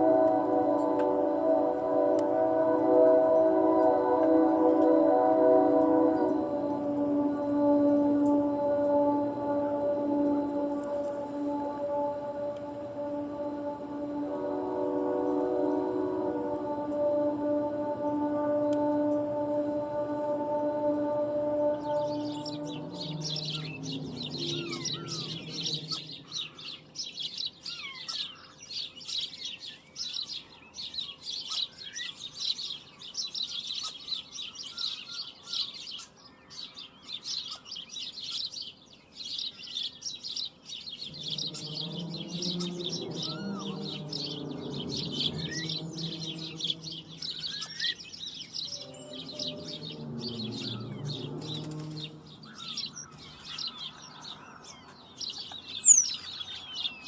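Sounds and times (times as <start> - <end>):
low wavering drone: 0.0 - 27.5, 40.9 - 57.0
birds chirping: 0.0 - 57.0.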